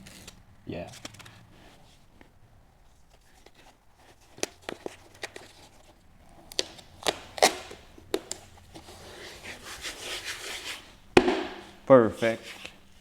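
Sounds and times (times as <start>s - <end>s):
rubbing scrape: 8.7s - 11.0s
taps and knocks on plastic shell: 11.2s - 11.6s.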